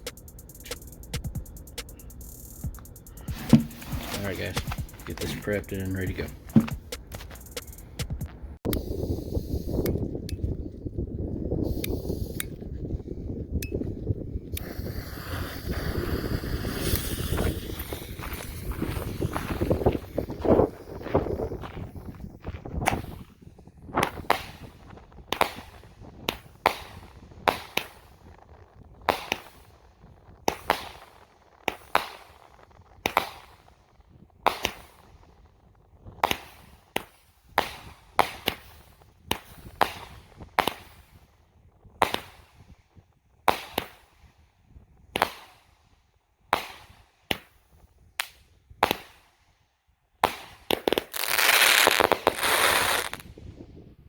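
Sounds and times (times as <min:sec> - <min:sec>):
fireworks pops and bangs: 0:03.2 - 0:08.9, 0:14.5 - 0:44.4, 0:45.1 - 0:45.8, 0:46.5 - 0:49.4, 0:50.2 - 0:53.4.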